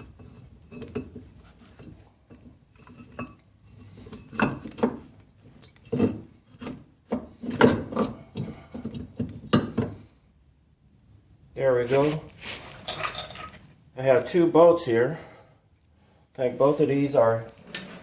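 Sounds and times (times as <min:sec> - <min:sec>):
metal knocks and scraping: 0:00.0 - 0:10.0.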